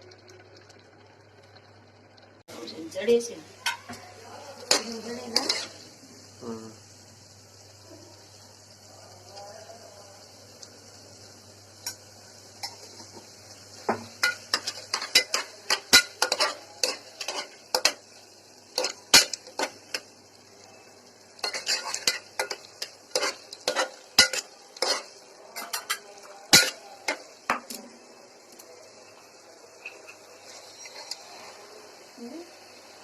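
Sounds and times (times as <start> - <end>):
metal spoon stirring in a pot: 4.6 - 5.9, 14.0 - 20.1, 21.4 - 27.9.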